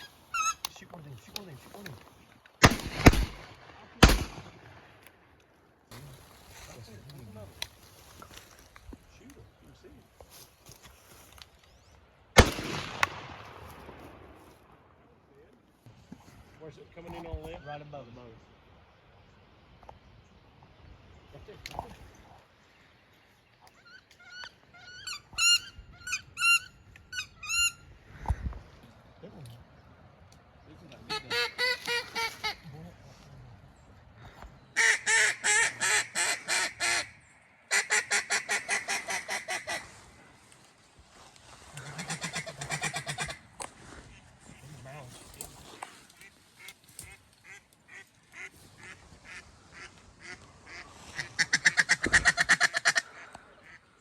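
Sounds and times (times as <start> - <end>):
high squealing duck calls: 0.0 - 0.7, 23.8 - 27.8, 31.0 - 32.7, 34.8 - 39.9, 41.8 - 43.4, 47.4 - 53.8
duck quacking: 31.1 - 32.6, 41.8 - 43.4, 47.4 - 53.8.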